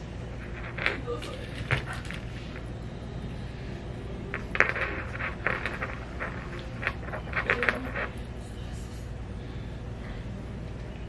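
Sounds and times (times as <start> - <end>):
steady low hum: 0.0 - 11.0
small hard objects clicking and rattling: 0.4 - 2.9, 4.3 - 8.4.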